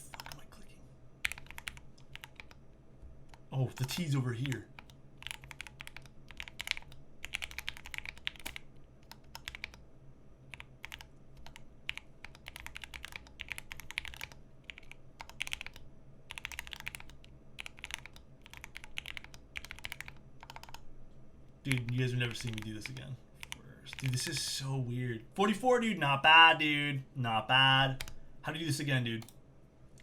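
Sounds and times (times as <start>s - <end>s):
mechanical keyboard typing: 0.0s - 0.4s, 1.2s - 2.6s, 3.3s - 9.8s, 10.5s - 20.8s, 21.7s - 24.4s, 27.9s - 28.2s.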